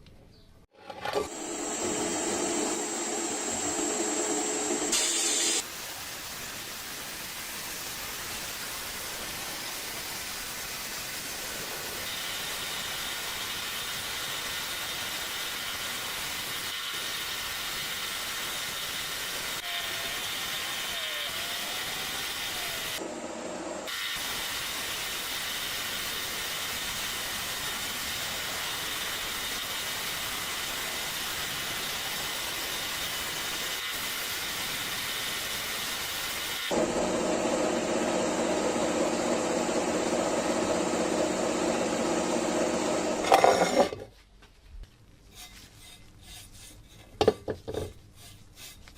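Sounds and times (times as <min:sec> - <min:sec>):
steady hissing: 0:04.8 - 0:23.0.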